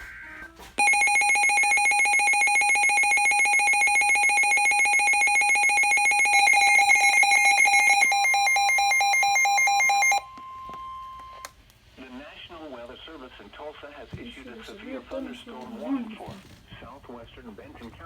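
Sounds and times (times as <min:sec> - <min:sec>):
warbling electronic alarm tone: 0:00.8 - 0:11.2
steady warning tone: 0:00.8 - 0:11.5.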